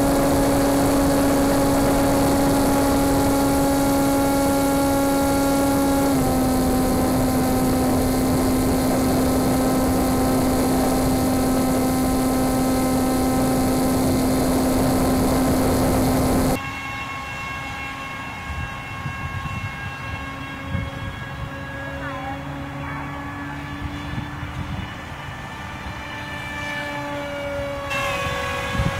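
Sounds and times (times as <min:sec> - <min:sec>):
model plane motor whine: 0:00.0 - 0:16.6, 0:18.5 - 0:28.9
wind noise: 0:00.0 - 0:16.6, 0:27.9 - 0:28.9.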